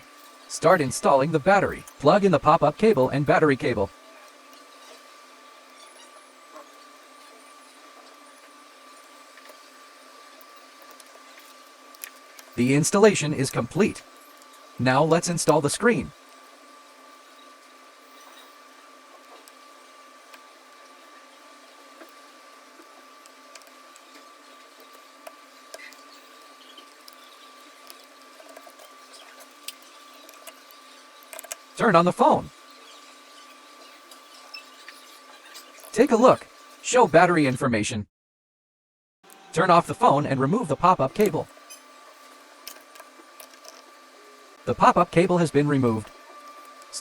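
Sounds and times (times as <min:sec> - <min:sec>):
steady hiss: 0:00.0 - 0:37.5
faint high whine: 0:00.0 - 0:37.7, 0:39.3 - 0:47.0.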